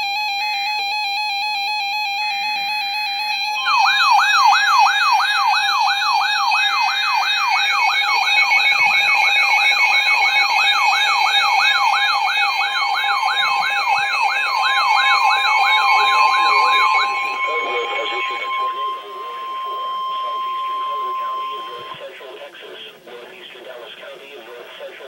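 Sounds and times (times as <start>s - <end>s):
electronic siren sweeping: 0.0s - 22.0s
steady electronic tone: 3.4s - 22.1s.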